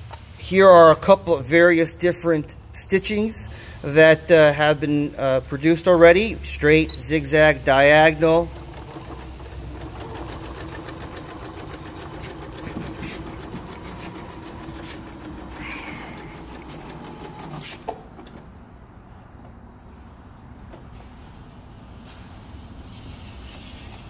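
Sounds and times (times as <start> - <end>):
sewing machine needle clattering: 7.8 - 17.6
sewing machine click: 8.4 - 18.4.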